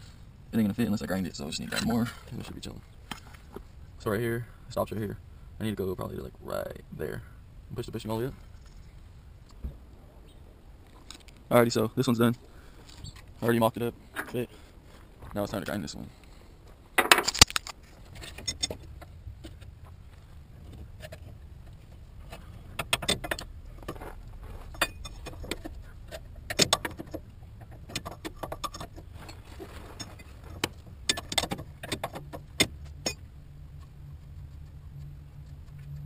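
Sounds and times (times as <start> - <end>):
low steady hum: 0.0 - 36.0
metal tools clinking: 17.0 - 18.8, 24.7 - 25.6.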